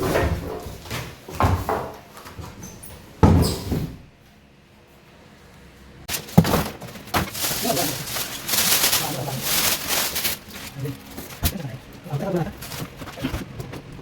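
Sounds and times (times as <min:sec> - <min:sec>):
packaging rustling and knocking: 0:06.1 - 0:11.6.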